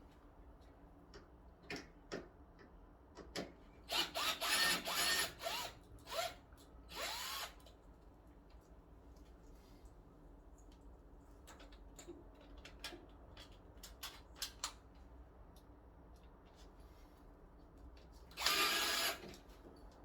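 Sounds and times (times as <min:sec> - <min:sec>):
cordless drill motor whine: 0:03.9 - 0:07.6, 0:18.4 - 0:19.2.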